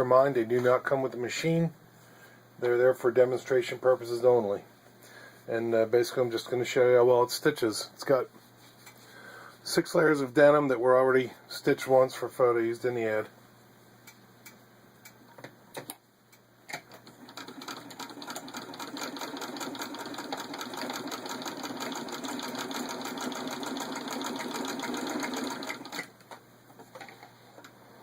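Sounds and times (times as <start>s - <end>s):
hand-crank sewing machine clatter: 17.3s - 26.1s.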